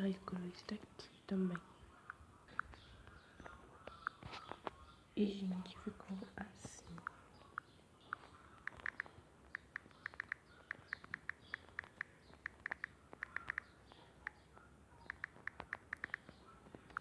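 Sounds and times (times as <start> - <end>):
taps on a smartphone: 8.1 - 14.4, 15.1 - 17.0.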